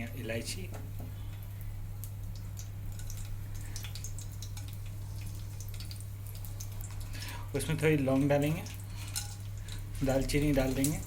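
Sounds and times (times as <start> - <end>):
spices popping in hot oil: 0.0 - 11.0.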